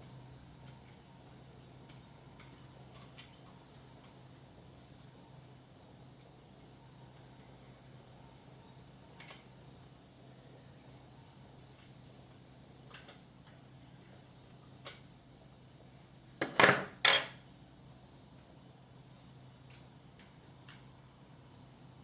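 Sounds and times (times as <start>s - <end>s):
light clicks of small objects: 19.7s - 20.9s.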